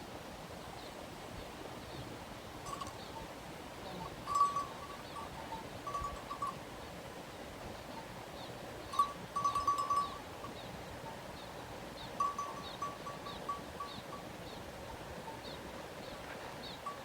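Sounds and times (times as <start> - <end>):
sheep bells clinking: 2.6 - 6.8, 8.8 - 15.6, 16.7 - 17.0
faint high chirp: 7.9 - 17.0.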